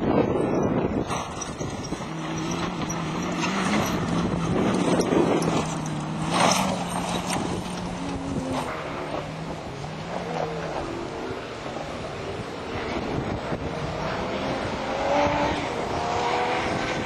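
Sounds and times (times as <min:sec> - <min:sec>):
vehicle engine running: 0:00.0 - 0:14.8
wind noise: 0:00.0 - 0:17.0.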